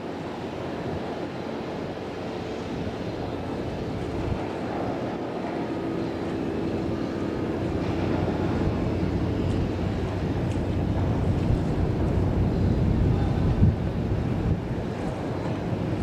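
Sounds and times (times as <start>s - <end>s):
rushing wind: 0.0s - 16.0s
boat engine drone: 2.0s - 16.0s.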